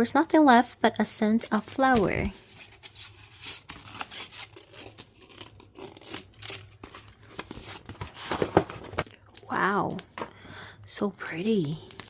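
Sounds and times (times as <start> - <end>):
paper and plastic rustling: 5.8 - 10.3.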